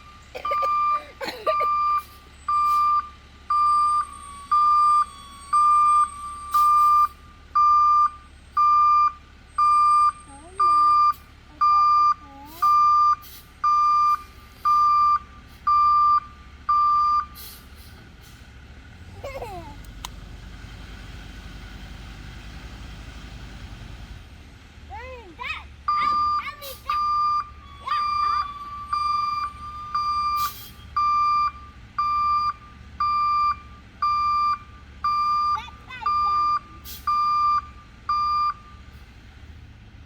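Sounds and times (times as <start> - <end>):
vehicle backup alarm beeping: 0.0 - 17.7, 25.8 - 39.0.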